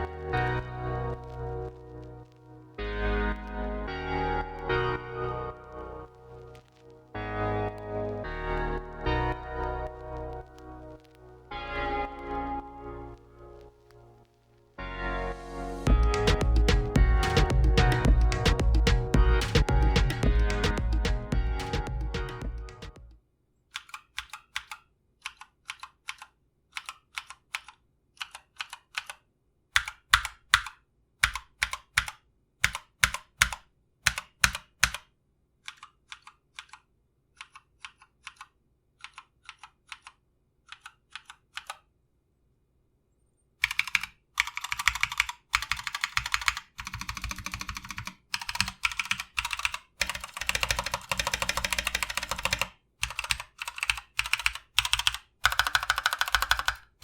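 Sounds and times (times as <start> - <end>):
mechanical keyboard keystrokes: 29.8 - 35.1, 43.6 - 57.0.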